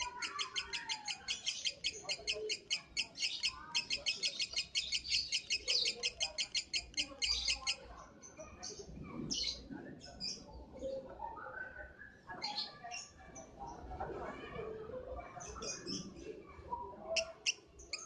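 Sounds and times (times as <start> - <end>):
lovebird chirping: 0.0 - 7.9.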